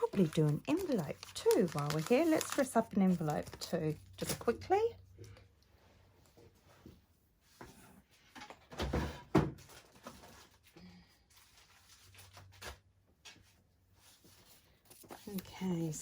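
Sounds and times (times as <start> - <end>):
rustling: 0.0 - 4.3.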